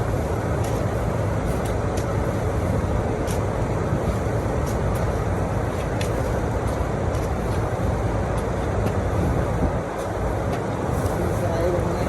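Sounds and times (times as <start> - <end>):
engine running: 0.0 - 12.0.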